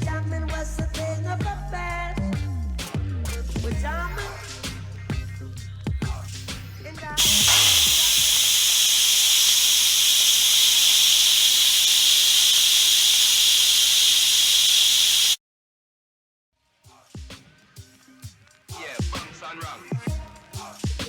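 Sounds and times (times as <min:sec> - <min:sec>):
pressure valve venting steam: 0:07.2 - 0:15.4.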